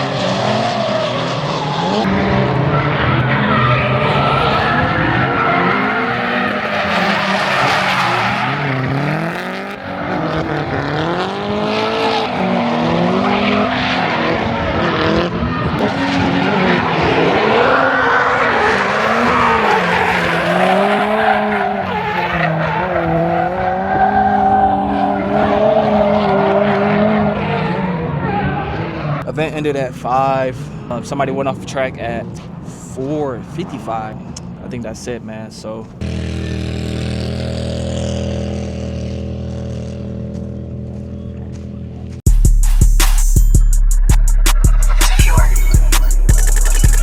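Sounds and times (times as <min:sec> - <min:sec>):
tyres squealing and skidding: 0:00.0 - 0:29.3
car engines revving: 0:00.0 - 0:42.2, 0:44.3 - 0:47.0.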